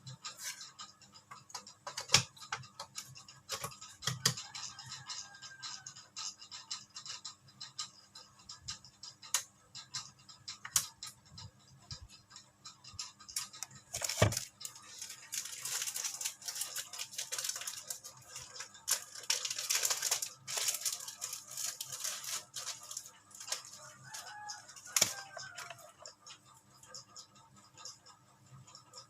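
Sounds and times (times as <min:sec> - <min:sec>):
small clicks: 0:00.0 - 0:29.0
packaging crinkling and rustling: 0:13.9 - 0:23.8.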